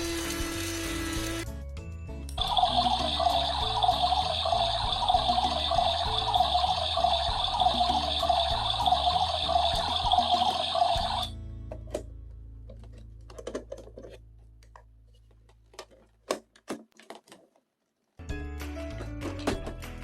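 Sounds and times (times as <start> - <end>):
background music tone: 0.5 - 12.9.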